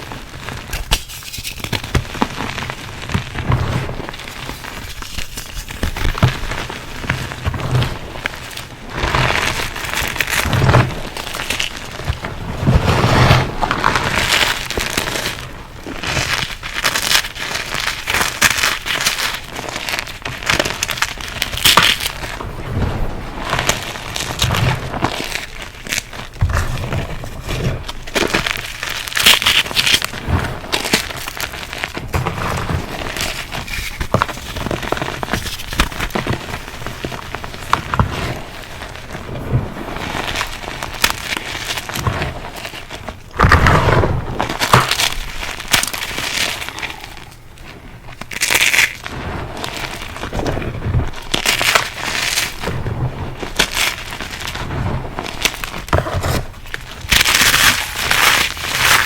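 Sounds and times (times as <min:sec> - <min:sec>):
chalk crunching: 0:00.0 - 0:59.0.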